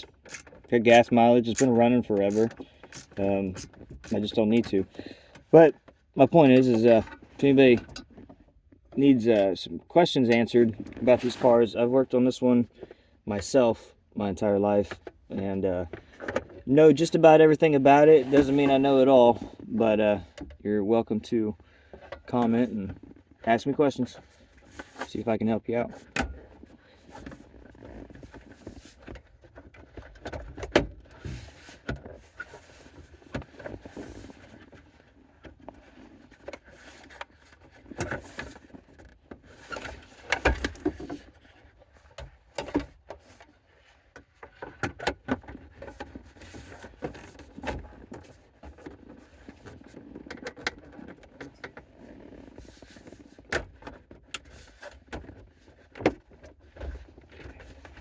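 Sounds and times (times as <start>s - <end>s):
parts and tools clicking and rattling: 0.0s - 5.5s.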